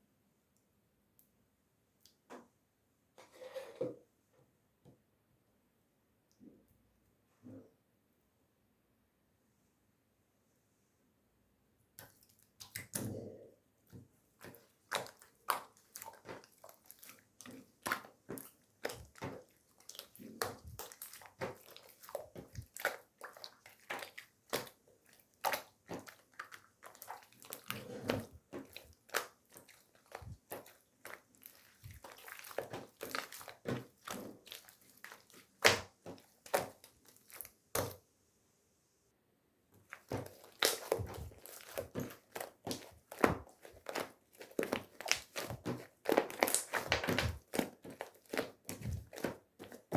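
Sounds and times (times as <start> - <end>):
slime squishing and popping: 14.4 - 38.0, 39.8 - 49.9.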